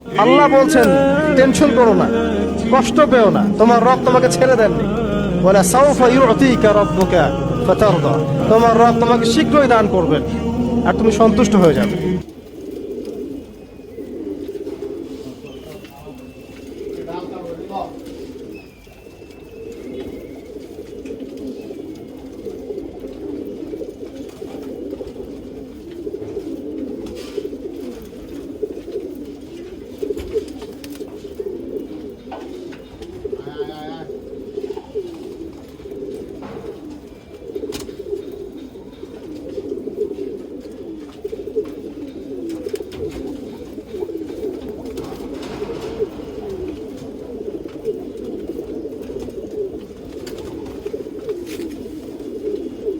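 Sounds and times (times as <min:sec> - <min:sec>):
pigeons cooing: 0:17.9 - 0:52.9.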